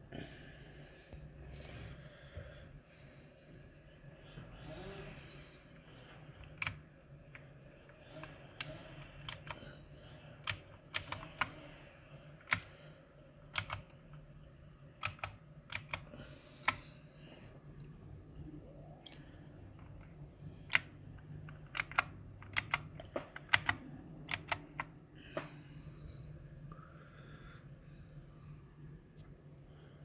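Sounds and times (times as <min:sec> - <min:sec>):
mechanical keyboard keys clacking: 0:06.4 - 0:07.5, 0:08.2 - 0:09.6, 0:10.4 - 0:11.6, 0:12.4 - 0:12.8, 0:13.5 - 0:14.2, 0:15.0 - 0:16.8, 0:19.7 - 0:24.9.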